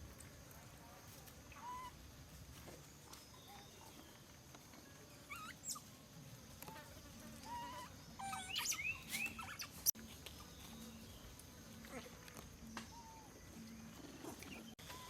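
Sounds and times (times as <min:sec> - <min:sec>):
high animal chirps and squeaks: 0:01.5 - 0:02.0, 0:05.2 - 0:05.9, 0:07.4 - 0:10.0, 0:14.0 - 0:15.0.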